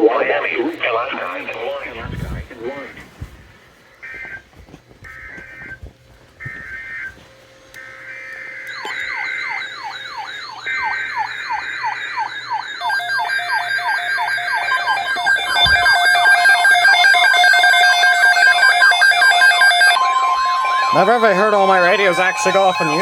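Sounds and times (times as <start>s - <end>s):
beeping alarm tones: 5.0s - 23.0s
falling alarm sweeps: 6.4s - 23.0s
warbling high alarm tone: 6.4s - 23.0s.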